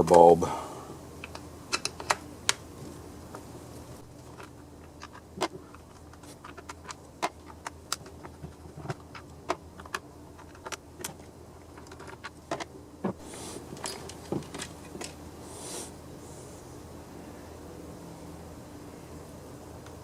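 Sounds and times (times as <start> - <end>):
tools and plastic parts clicking: 4.3 - 12.7
short soft hiss: 15.4 - 16.6.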